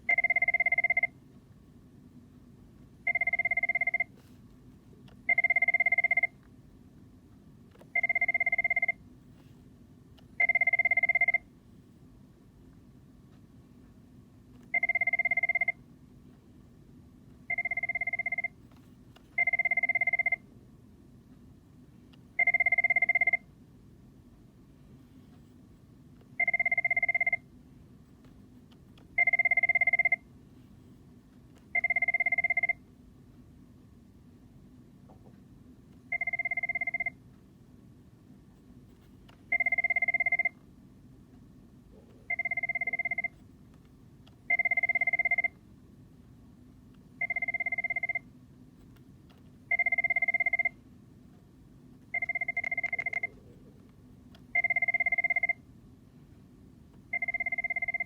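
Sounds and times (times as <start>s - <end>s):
faint low hum: 0.0s - 58.0s
telephone ringer beeps: 0.1s - 1.2s, 3.0s - 4.4s, 5.2s - 6.4s, 7.8s - 9.5s, 10.4s - 11.5s, 14.6s - 15.8s, 17.5s - 20.4s, 22.4s - 23.5s, 26.4s - 27.5s, 29.2s - 30.3s, 31.6s - 32.8s, 36.1s - 37.2s, 39.5s - 40.6s, 42.3s - 43.4s, 44.4s - 45.6s, 47.2s - 48.3s, 49.7s - 50.8s, 52.1s - 53.4s, 54.5s - 55.6s, 57.1s - 58.0s.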